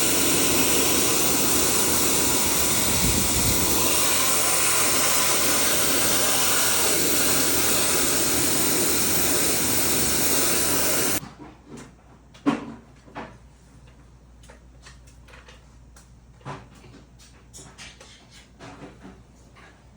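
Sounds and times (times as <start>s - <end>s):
high-pressure water spray hissing: 0.0s - 11.2s.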